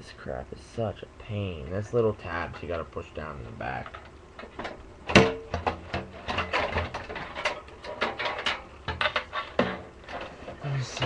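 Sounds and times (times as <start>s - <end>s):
plastic and metal clicks and knocks: 3.9s - 10.3s.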